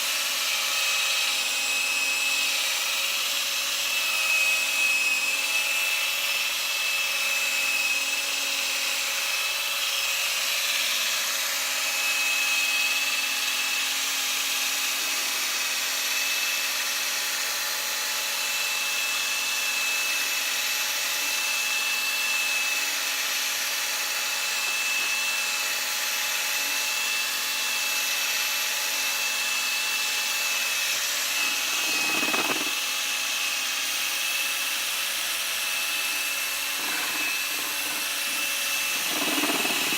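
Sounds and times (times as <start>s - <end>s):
polishing machine whine: 29.2s - 39.9s.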